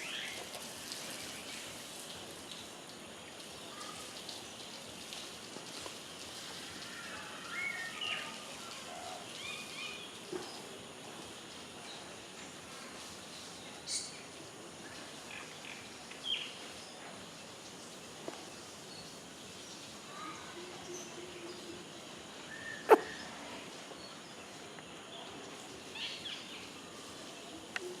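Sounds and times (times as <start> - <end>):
outdoor background: 0.0 - 28.0
bird chirps: 22.5 - 23.3
rabbit sneezing: 22.8 - 23.2.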